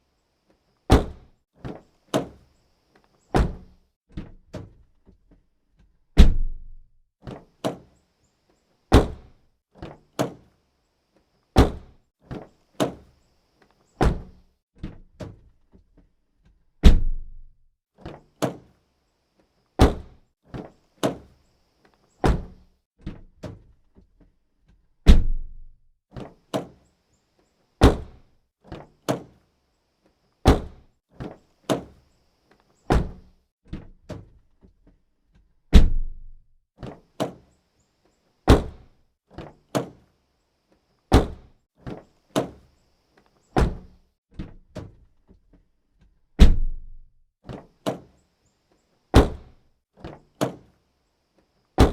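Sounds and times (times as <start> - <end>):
car doors opening and shutting: 0.9 - 2.4, 3.3 - 3.7, 8.9 - 10.4, 11.6 - 13.1, 14.0 - 15.4, 16.8 - 18.6, 19.8 - 21.2, 22.2 - 22.6, 27.8 - 29.3, 30.4 - 32.0, 32.9 - 33.3, 38.5 - 38.8, 41.1 - 42.6, 43.5 - 44.9, 49.2 - 50.6.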